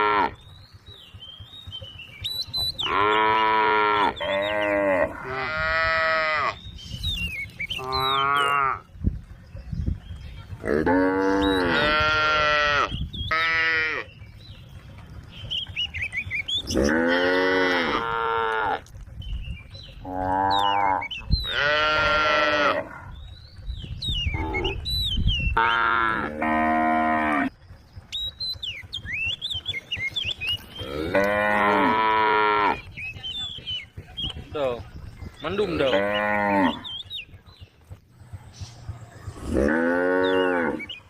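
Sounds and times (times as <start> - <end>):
cows mooing: 0.0 - 0.4, 2.6 - 6.6, 7.7 - 8.9, 10.6 - 14.1, 16.6 - 18.9, 20.0 - 23.2, 24.3 - 24.8, 25.6 - 27.5, 30.7 - 32.9, 35.5 - 37.0, 39.0 - 41.0.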